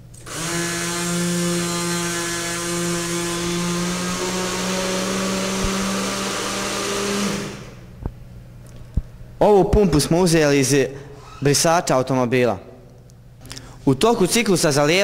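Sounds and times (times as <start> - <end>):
electric pump whining: 0.0 - 7.9.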